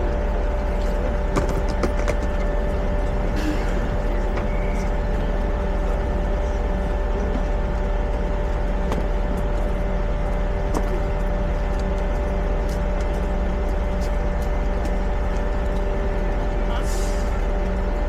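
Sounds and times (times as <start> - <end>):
constant hum: 0.0 - 18.0
train rumble: 0.0 - 18.0.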